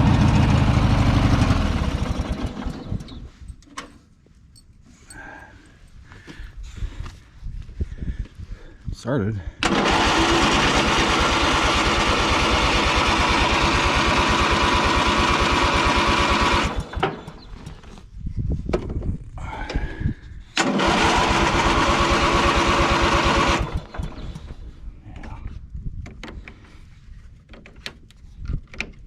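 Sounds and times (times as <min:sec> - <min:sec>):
lawn tractor engine running: 0:00.0 - 0:03.3, 0:09.6 - 0:18.0, 0:20.6 - 0:24.7.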